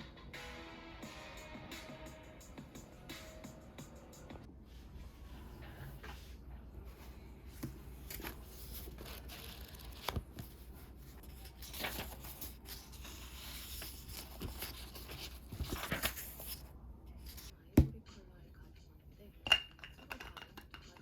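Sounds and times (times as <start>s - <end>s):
paper rustling and crinkling: 7.6s - 17.5s.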